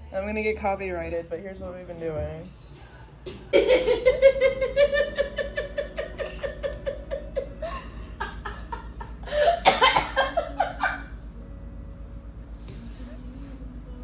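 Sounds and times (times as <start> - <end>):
person laughing: 3.6 - 11.2.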